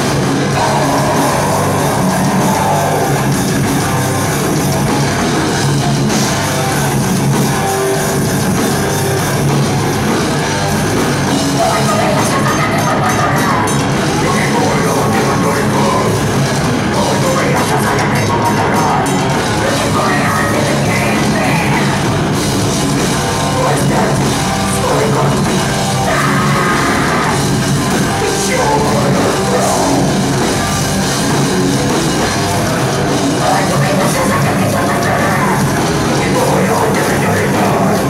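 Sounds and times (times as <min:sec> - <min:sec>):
heavy metal band playing: 0:00.0 - 0:38.0
pounding drum kit: 0:00.0 - 0:38.0
shouted vocals: 0:00.4 - 0:03.4, 0:11.5 - 0:22.2, 0:23.5 - 0:30.8, 0:33.0 - 0:38.0.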